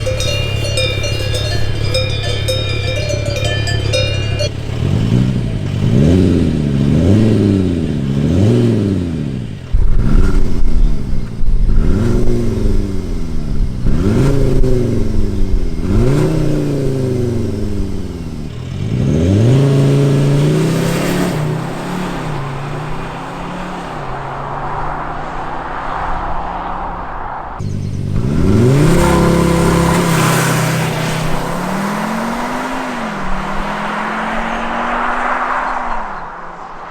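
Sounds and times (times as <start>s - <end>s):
steady ringing tones: 0.0s - 4.9s
car engine revving: 0.0s - 36.8s.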